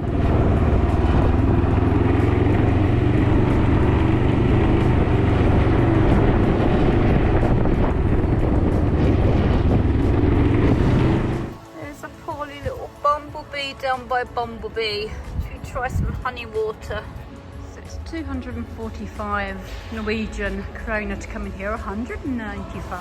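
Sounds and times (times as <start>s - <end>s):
motorcycle engine: 0.0s - 11.6s
wind and road noise: 0.0s - 23.0s.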